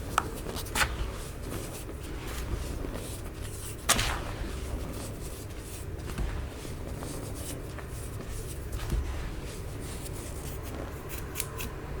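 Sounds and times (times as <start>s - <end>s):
dull thumps: 2.2s - 10.9s.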